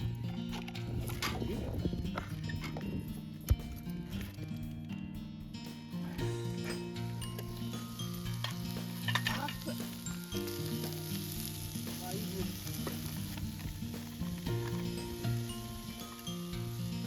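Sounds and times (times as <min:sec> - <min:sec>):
background music with low notes: 0:00.0 - 0:17.0
food sizzling in a pan: 0:06.2 - 0:17.0.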